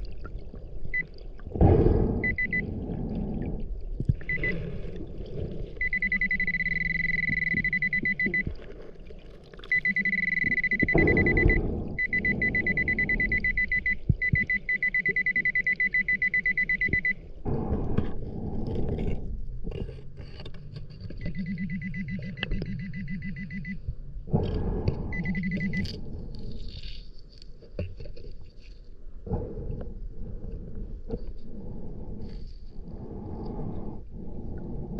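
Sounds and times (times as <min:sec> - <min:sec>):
metal detector rapid pulsing beep: 0:02.2 - 0:02.6, 0:05.8 - 0:08.4, 0:09.7 - 0:17.2, 0:21.2 - 0:23.8, 0:25.1 - 0:25.9.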